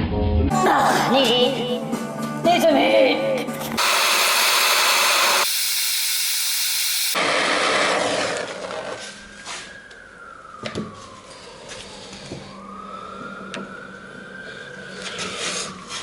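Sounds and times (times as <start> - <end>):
torch flame hissing: 3.8 - 7.5
faint whistle: 9.2 - 16.0.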